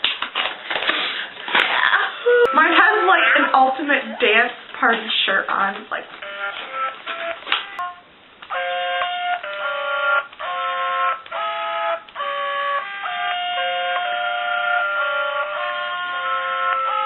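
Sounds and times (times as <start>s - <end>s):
plush toy singing electronic tune: 6.2s - 17.0s.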